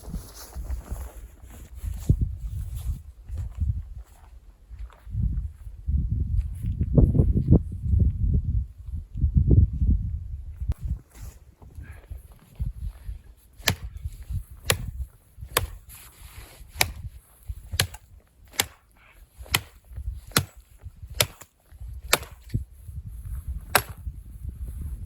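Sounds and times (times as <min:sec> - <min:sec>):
wood being chopped: 0:13.6 - 0:14.0, 0:14.6 - 0:15.9, 0:16.7 - 0:17.1, 0:17.7 - 0:22.6, 0:23.6 - 0:24.0.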